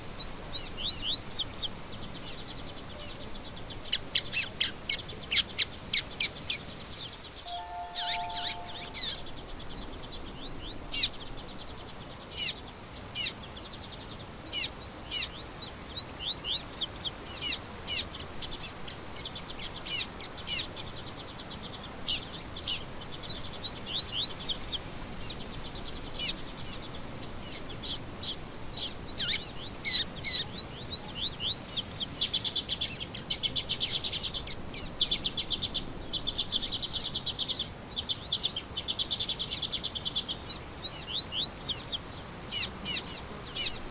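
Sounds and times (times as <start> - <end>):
songbirds chirping: 0.0 - 43.9
bird trilling: 7.5 - 9.3.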